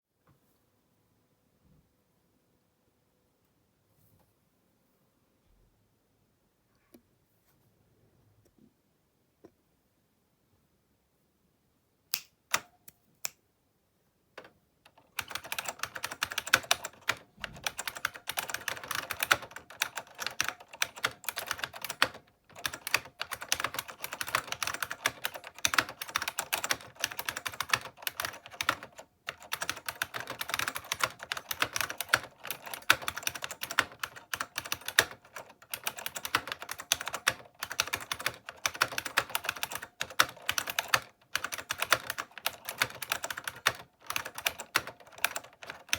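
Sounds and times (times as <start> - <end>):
clicky keyboard typing: 12.5 - 12.8, 14.4 - 45.9.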